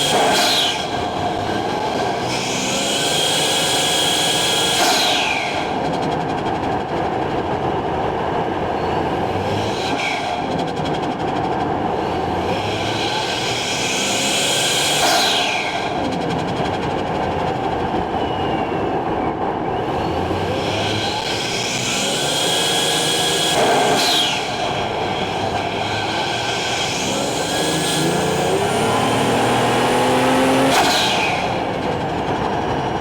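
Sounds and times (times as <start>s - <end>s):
car engine under load: 0.0s - 33.0s.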